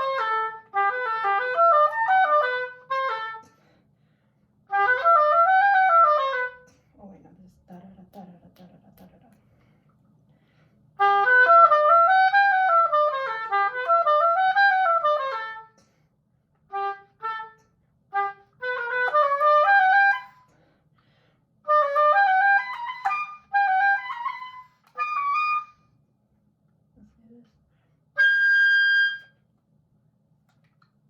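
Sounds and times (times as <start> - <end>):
oboe playing quick runs: 11.0 - 15.8, 18.2 - 20.4, 21.7 - 25.8, 28.2 - 29.3.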